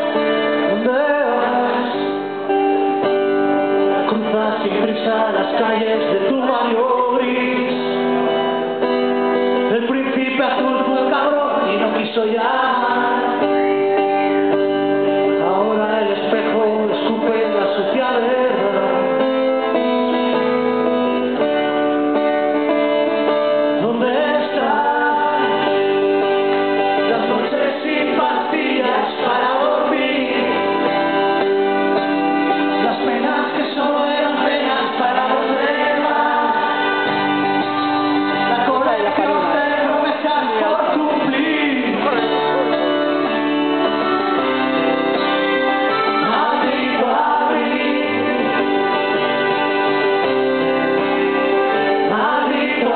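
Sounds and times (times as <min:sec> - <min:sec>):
person singing: 0:00.0 - 0:02.9, 0:03.9 - 0:08.4, 0:15.2 - 0:19.6, 0:23.6 - 0:52.9
rock band playing: 0:00.0 - 0:52.9.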